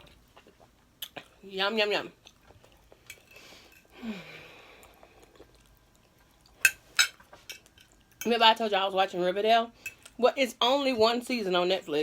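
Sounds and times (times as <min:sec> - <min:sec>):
soft chewing: 0:00.0 - 0:01.4, 0:02.2 - 0:04.0, 0:04.6 - 0:08.2.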